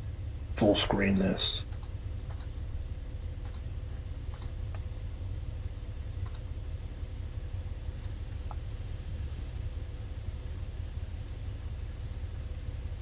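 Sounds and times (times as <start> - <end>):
steady low hum: 0.0 - 13.0
computer mouse clicking: 1.7 - 2.6, 3.4 - 3.7, 4.3 - 4.8, 6.2 - 6.4, 7.9 - 8.2.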